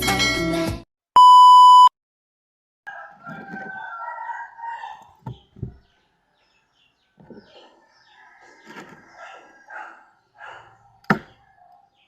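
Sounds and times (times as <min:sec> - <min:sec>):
loud electronic beep: 0:01.2 - 0:01.9
rooster crowing: 0:02.9 - 0:05.2, 0:07.8 - 0:10.1.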